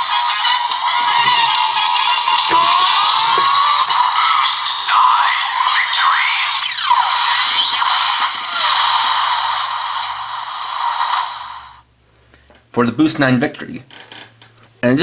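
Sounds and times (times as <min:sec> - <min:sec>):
toy electronic whooshes: 0:00.0 - 0:11.8
toy speaker music: 0:00.0 - 0:11.8.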